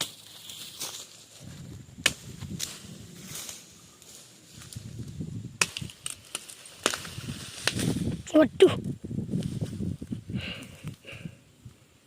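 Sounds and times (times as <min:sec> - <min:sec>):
hand tool chopping into soil: 0:02.0 - 0:02.8, 0:05.6 - 0:08.2.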